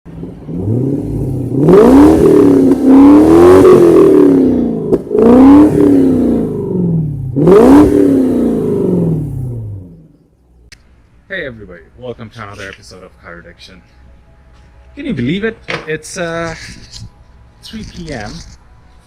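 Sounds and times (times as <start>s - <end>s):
car engine revving: 0.1s - 10.5s.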